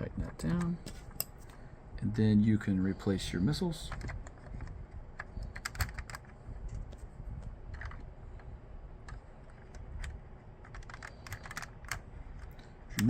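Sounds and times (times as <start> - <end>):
soft handling noise: 3.0 - 13.0.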